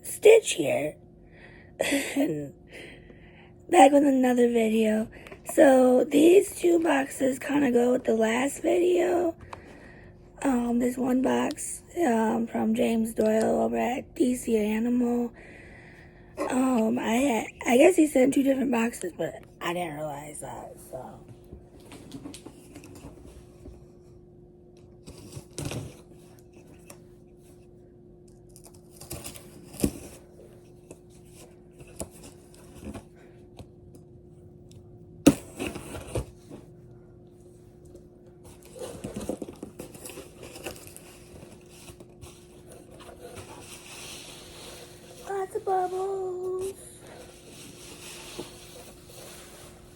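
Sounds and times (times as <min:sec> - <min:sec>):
cardboard scraping: 0:35.3 - 0:36.7, 0:38.5 - 0:49.9.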